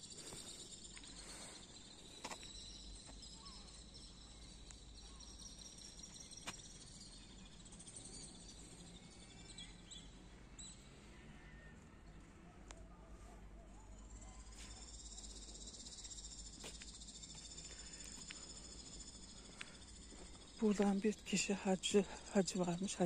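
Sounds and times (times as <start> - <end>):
faint birds chirping: 0.0 - 23.0.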